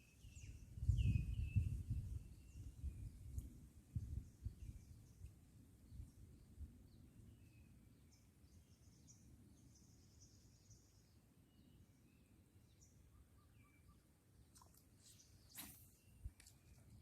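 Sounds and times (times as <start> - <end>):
faint high chirps and whistles: 0.0 - 3.4, 7.3 - 16.8.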